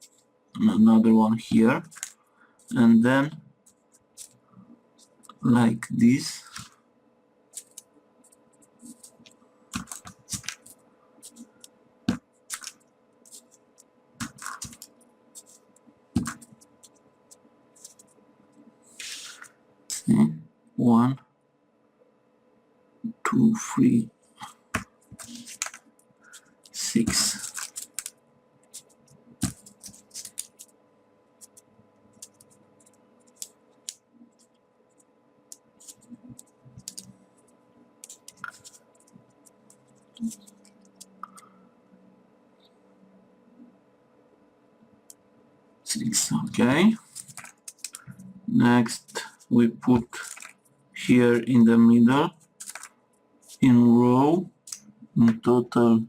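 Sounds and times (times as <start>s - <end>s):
paper rustling: 1.8s - 2.1s, 7.6s - 7.8s, 8.8s - 11.5s, 12.5s - 13.6s, 14.2s - 17.0s, 17.8s - 18.1s, 25.1s - 28.1s, 28.7s - 30.7s, 38.0s - 39.1s, 46.5s - 48.2s, 48.8s - 50.6s, 52.6s - 52.9s
light paper clicks: 7.6s - 7.9s, 12.5s - 15.6s, 24.8s - 30.8s, 38.0s - 41.5s, 47.0s - 48.2s, 48.8s - 50.6s, 52.6s - 53.6s.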